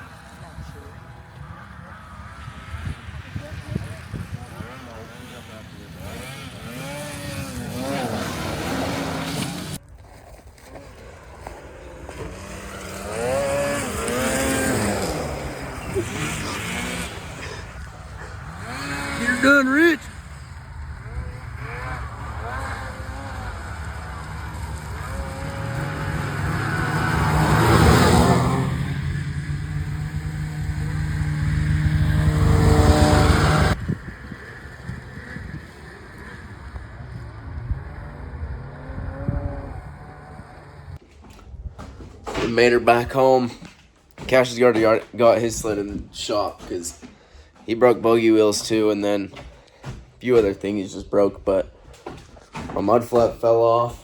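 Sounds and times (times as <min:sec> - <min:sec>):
snowmobile engine revving: 0:00.0 - 0:09.8, 0:10.6 - 0:41.0.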